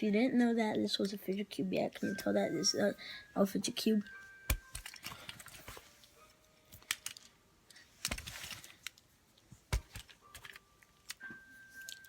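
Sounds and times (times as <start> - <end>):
handling rustle: 6.8 - 9.0.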